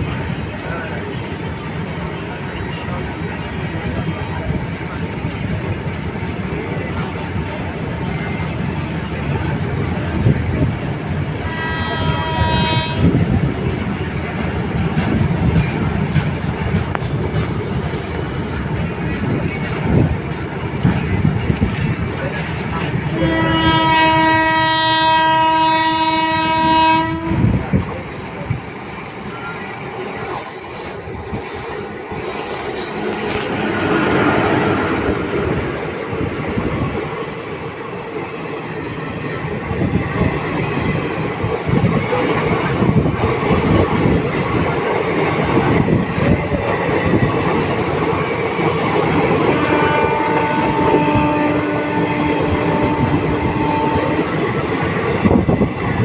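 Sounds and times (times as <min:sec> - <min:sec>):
wheels clattering over rail joints: 0:00.0 - 0:26.1
locomotive horn: 0:11.4 - 0:13.4, 0:23.0 - 0:27.9, 0:31.2 - 0:36.7, 0:49.4 - 0:54.4
high-pitched wheel squeal: 0:27.3 - 0:41.8.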